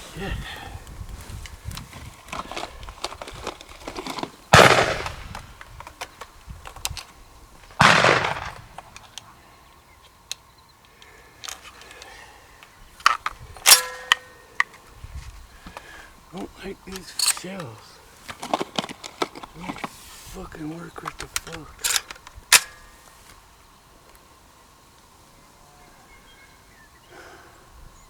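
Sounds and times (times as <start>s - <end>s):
shotgun shots with echo: 4.5s - 5.5s, 7.8s - 8.9s.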